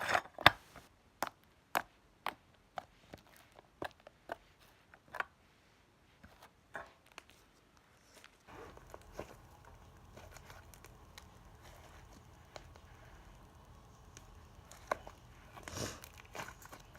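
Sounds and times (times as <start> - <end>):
low steady rumble: 8.5 - 16.9.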